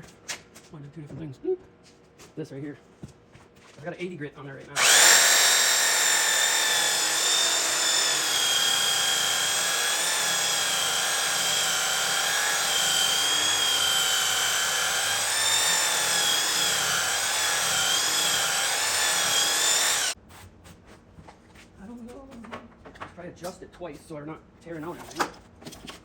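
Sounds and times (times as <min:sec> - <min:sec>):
electric sander motor whine: 0:04.8 - 0:20.2.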